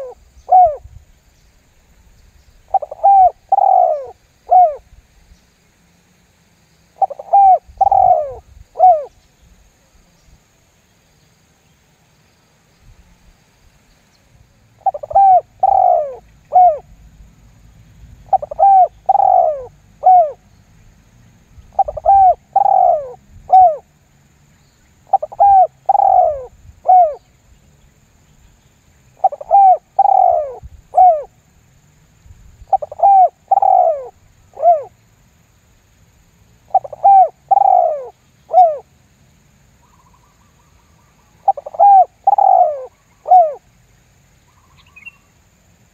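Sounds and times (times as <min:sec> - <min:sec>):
dove cooing: 0:00.0 - 0:00.9, 0:02.7 - 0:04.9, 0:07.0 - 0:09.1, 0:14.8 - 0:16.9, 0:18.3 - 0:20.4, 0:21.7 - 0:23.9, 0:25.1 - 0:27.2, 0:29.2 - 0:31.3, 0:32.7 - 0:35.0, 0:36.7 - 0:38.9, 0:41.4 - 0:43.7.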